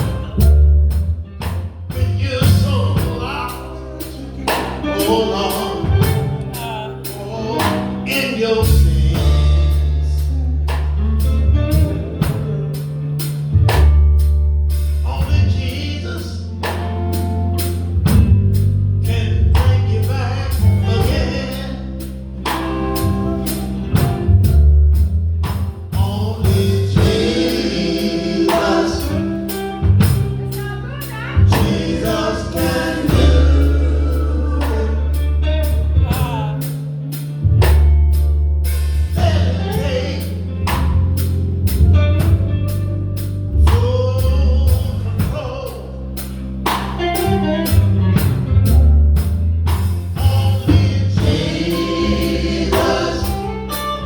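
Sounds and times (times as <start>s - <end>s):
group singing gospel: 0.0s - 0.7s, 1.9s - 11.2s, 19.0s - 24.4s, 25.9s - 41.7s, 49.8s - 54.0s
bass: 0.0s - 54.0s
keyboard: 0.0s - 54.0s
drum beat: 28.4s - 35.3s, 36.0s - 36.9s, 49.8s - 53.9s.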